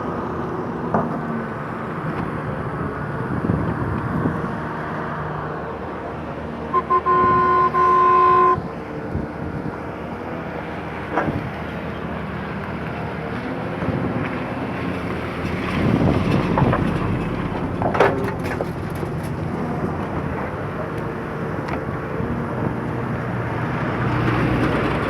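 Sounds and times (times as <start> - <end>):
engine and traffic noise: 0.0 - 25.0
vehicle horn toots: 6.7 - 8.7.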